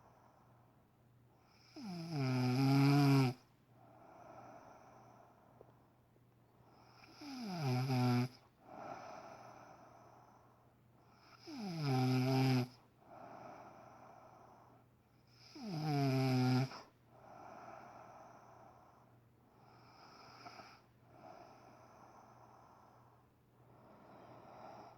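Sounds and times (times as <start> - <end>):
woman snoring loudly: 1.6 - 3.4, 7.1 - 8.4, 11.4 - 12.8, 15.4 - 16.8
breathy breaths: 3.7 - 5.8, 8.5 - 11.5, 12.9 - 15.0, 16.8 - 24.9.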